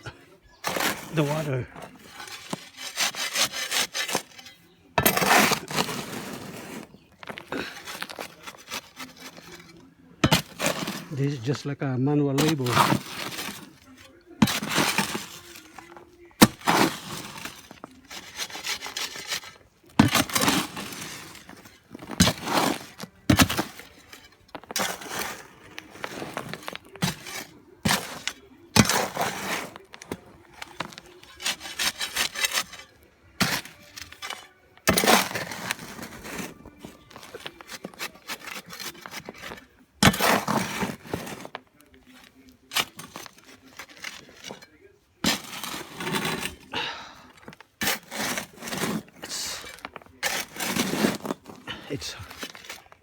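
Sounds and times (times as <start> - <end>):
gravel and cement scraping: 0.0 - 53.0.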